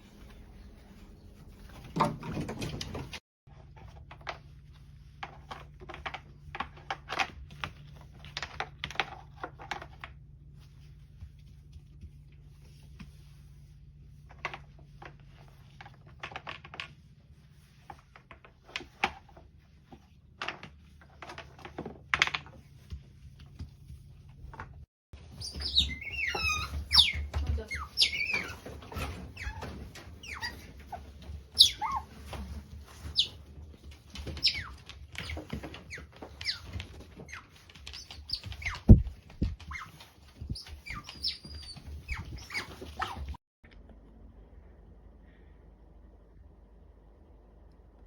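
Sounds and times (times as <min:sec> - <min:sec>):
otters chirping and squeaking: 0:25.2 - 0:43.4.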